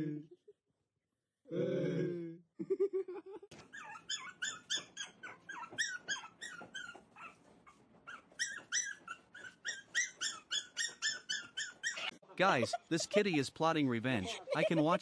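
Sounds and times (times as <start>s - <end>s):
dog yipping: 3.6s - 12.2s.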